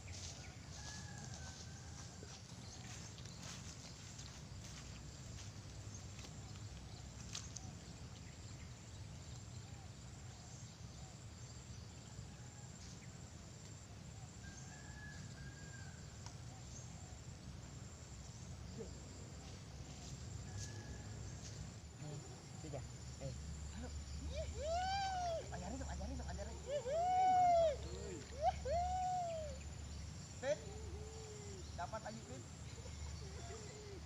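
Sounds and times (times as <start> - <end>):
pulsing insect trill: 8.5 - 34.0.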